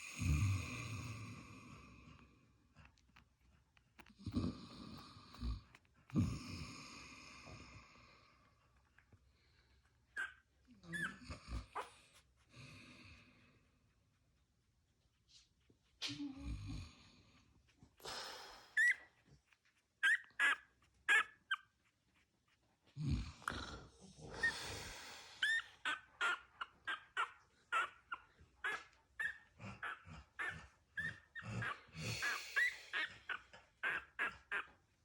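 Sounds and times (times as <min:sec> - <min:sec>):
dog high-pitched yelps: 0:10.2 - 0:11.2, 0:20.0 - 0:21.7, 0:25.4 - 0:34.8
dog breathy sounds: 0:15.0 - 0:35.0.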